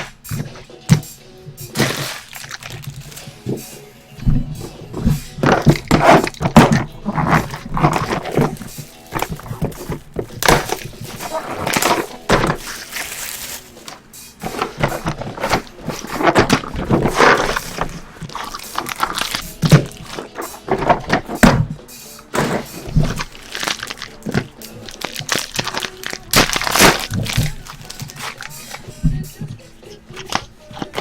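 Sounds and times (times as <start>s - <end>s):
wrappers crinkling and tearing: 1.7s - 3.6s, 4.6s - 21.5s, 22.3s - 29.5s
cards knocking against table: 1.7s - 13.0s.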